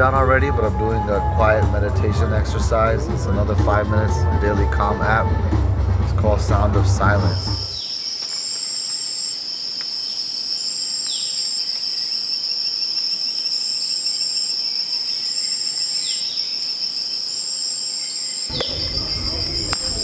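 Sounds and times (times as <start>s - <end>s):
crickets steady high trill: 0.0s - 20.0s
higher cricket trill spells: 6.6s - 20.0s.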